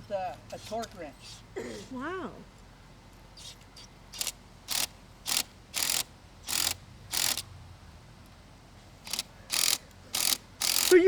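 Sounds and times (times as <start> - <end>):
ratcheting torque wrench: 4.1 - 7.5, 9.0 - 11.0.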